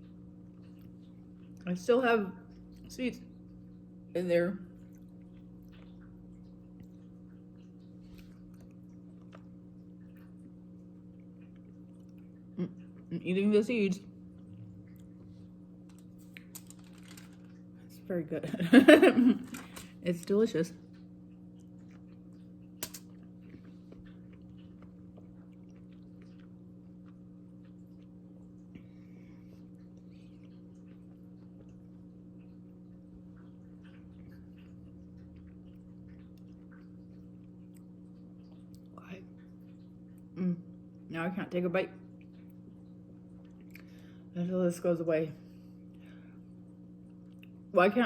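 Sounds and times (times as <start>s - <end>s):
soft chewing mouth clicks: 0.0s - 1.7s, 4.7s - 13.1s, 20.9s - 41.0s, 42.1s - 44.2s, 45.6s - 47.6s
steady low hum: 0.0s - 48.0s.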